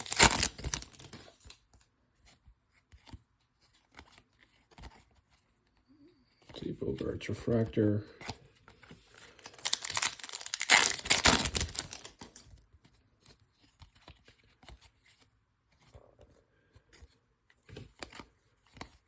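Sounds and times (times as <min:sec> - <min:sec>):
card pack wrapper tearing: 0:00.0 - 0:01.6, 0:09.1 - 0:12.5
cards clicking and sliding: 0:00.0 - 0:01.8, 0:08.2 - 0:12.6, 0:16.8 - 0:19.0.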